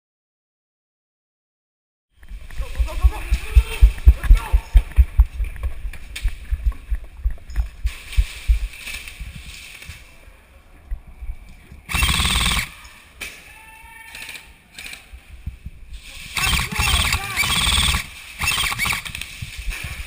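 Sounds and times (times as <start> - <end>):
low thumps: 2.2 - 9.5
airsoft rifle automatic burst: 11.9 - 12.8, 16.3 - 19.3.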